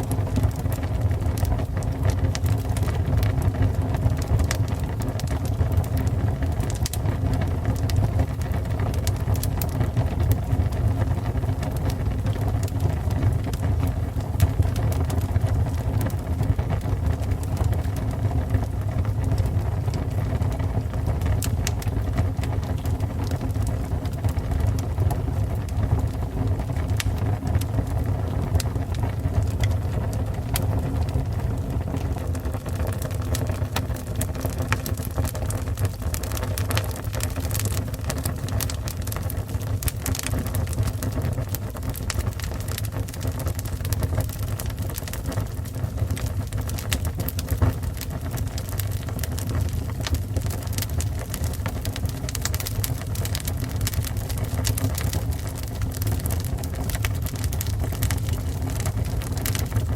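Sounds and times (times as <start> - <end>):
fire crackling and popping: 0.0 - 59.9
fire rumbling: 0.0 - 59.9.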